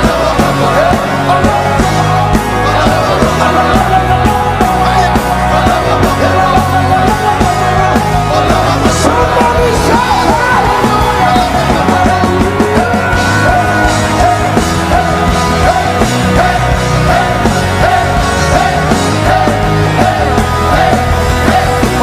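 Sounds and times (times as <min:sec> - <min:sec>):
live worship band music: 0:00.0 - 0:22.0.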